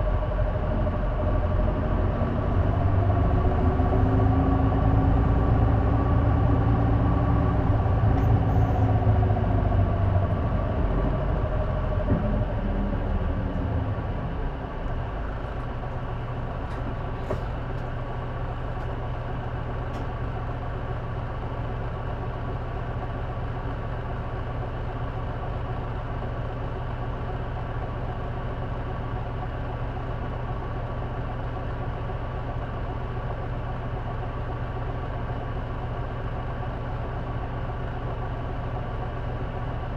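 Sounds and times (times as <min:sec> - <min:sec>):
bus diesel engine: 0:00.0 - 0:39.9.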